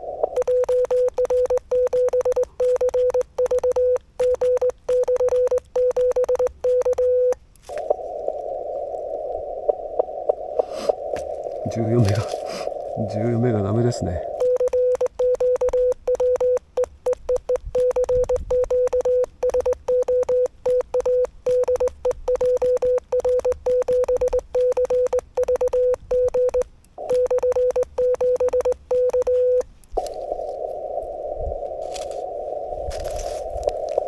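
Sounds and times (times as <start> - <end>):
key clicks: 0.4 - 7.1, 14.4 - 29.6
morse code tone: 0.4 - 7.4, 14.3 - 29.7
radio band noise hiss: 7.6 - 14.6.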